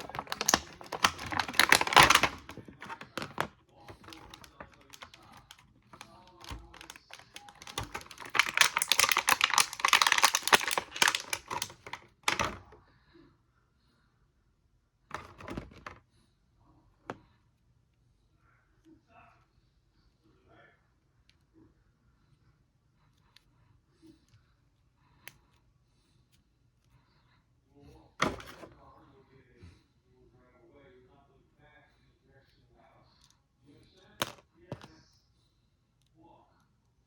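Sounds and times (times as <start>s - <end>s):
plastic packaging crackling clicks: 0.0s - 12.7s, 15.1s - 16.0s, 28.2s - 28.7s.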